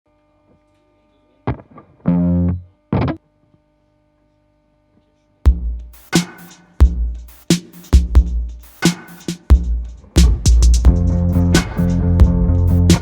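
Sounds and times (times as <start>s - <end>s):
hard drum hits: 5.5s - 13.0s
distorted blues-rock music: 9.6s - 13.0s.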